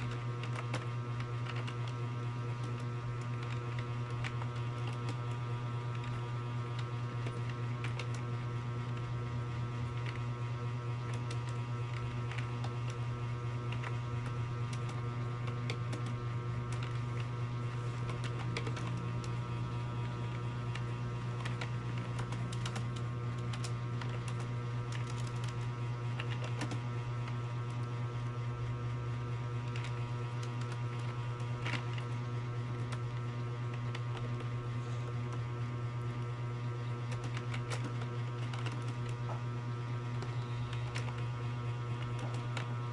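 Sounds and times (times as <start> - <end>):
steady electrical hum: 0.0 - 42.9
keyboard typing: 13.6 - 26.9, 37.0 - 39.3.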